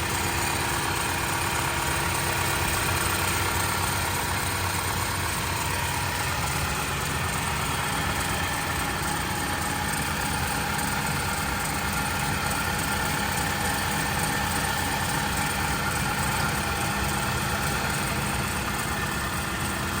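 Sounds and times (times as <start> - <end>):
engine idling: 0.0 - 20.0.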